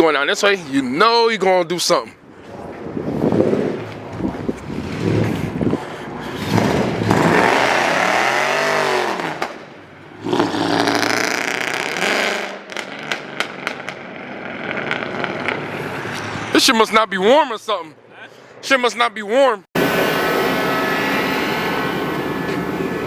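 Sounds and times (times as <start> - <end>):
car engine revving hard: 6.3 - 9.4.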